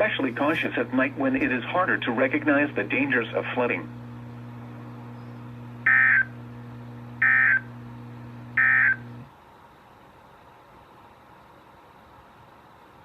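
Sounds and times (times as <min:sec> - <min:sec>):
steady low hum: 0:00.0 - 0:09.7
data bursts: 0:05.2 - 0:06.4, 0:07.2 - 0:07.7, 0:08.6 - 0:09.1.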